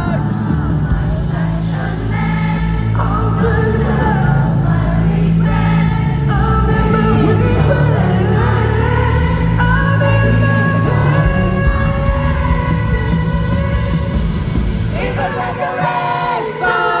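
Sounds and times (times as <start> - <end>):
live pop band playing: 0.0 - 17.0
person singing: 5.9 - 17.0.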